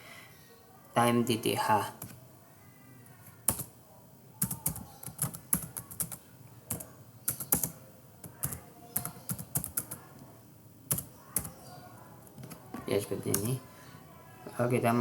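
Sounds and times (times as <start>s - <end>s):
typing on computer keyboard: 3.4s - 3.7s, 4.4s - 10.0s, 10.9s - 11.6s.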